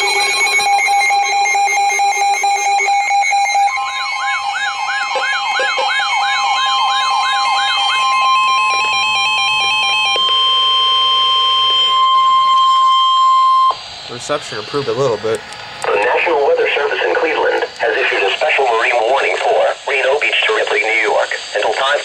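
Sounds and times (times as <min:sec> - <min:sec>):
steady single-pitch alert tone: 0:00.0 - 0:13.9
pulsing beeping alarm tones: 0:00.0 - 0:19.2
wailing electronic siren: 0:00.0 - 0:19.3.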